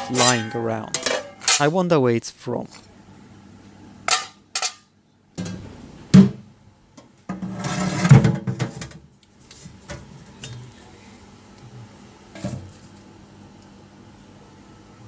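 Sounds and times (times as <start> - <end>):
metal scraping: 0.0 - 1.7.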